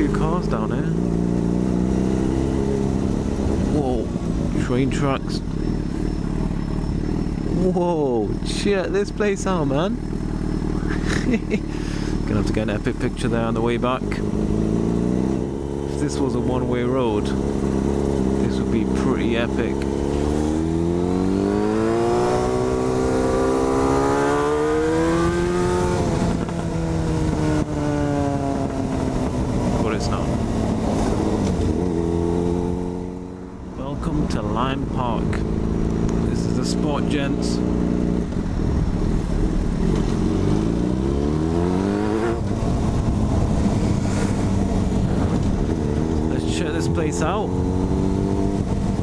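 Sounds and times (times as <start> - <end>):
motorcycle engine accelerating: 0.0 - 49.0
wind rumble on microphone: 24.8 - 36.3, 37.6 - 49.0.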